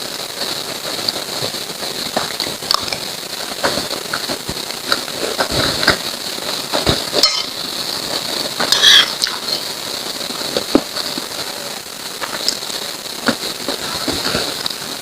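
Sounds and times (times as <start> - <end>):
wet chewing and mouth sounds: 2.1 - 6.0.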